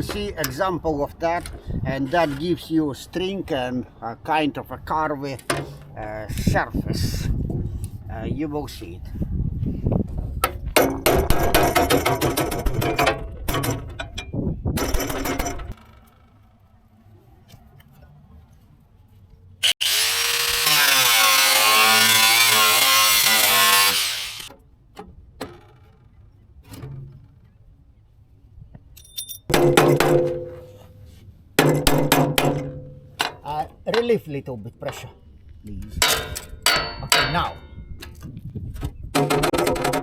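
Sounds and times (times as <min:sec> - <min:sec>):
power tool cutting aluminum sheet: 0:19.6 - 0:24.5.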